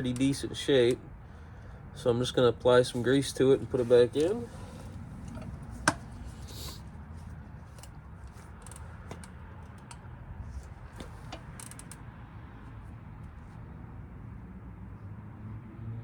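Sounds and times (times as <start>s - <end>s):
hands handling metal parts: 3.0s - 12.0s.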